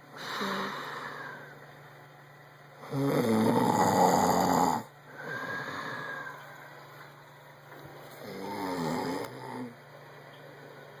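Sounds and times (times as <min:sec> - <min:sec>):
man snoring: 0:02.8 - 0:06.2, 0:08.2 - 0:09.8.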